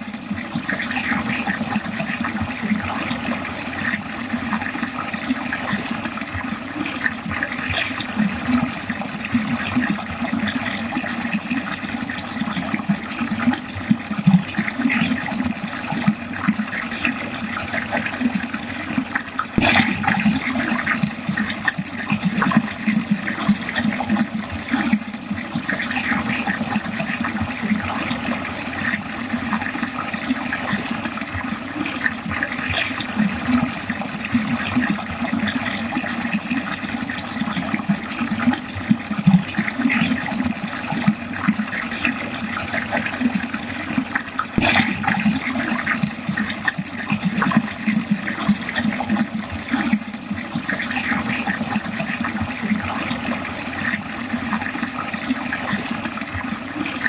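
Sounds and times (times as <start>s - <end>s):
water running down a drain: 0.0s - 57.0s.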